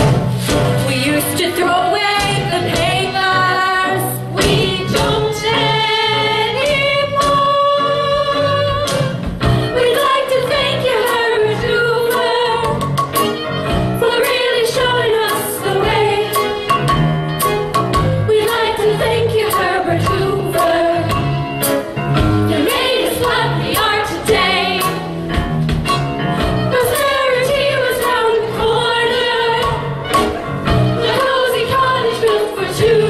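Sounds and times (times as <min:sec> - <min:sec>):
instrumental accompaniment: 0:00.0 - 0:33.0
cast singing together: 0:18.3 - 0:21.2, 0:22.5 - 0:25.0, 0:26.6 - 0:29.9, 0:31.0 - 0:33.0.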